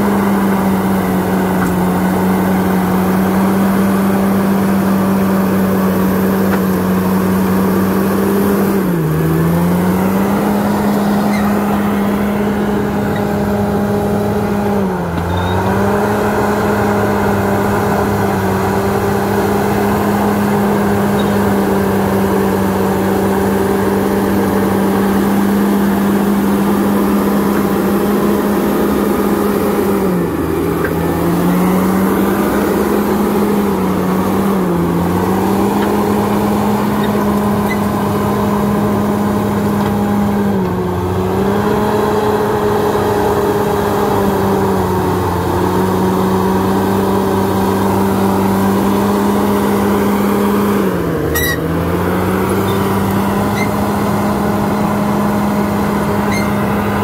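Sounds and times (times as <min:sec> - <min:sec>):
bulldozer diesel engine running: 0:00.0 - 0:57.0.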